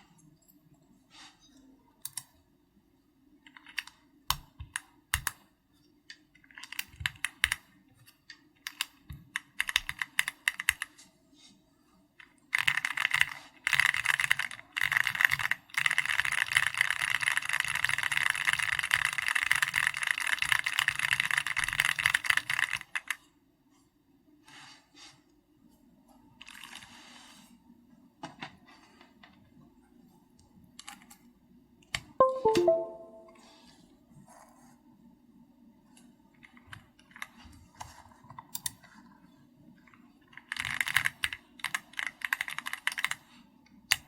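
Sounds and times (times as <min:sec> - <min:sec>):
typing on mechanical keyboard: 0:03.4 - 0:05.4, 0:06.4 - 0:11.0, 0:12.2 - 0:23.2, 0:40.3 - 0:43.3.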